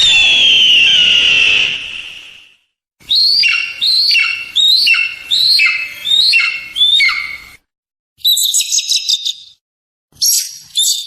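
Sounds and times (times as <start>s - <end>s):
eagle calling: 3.0s - 7.6s.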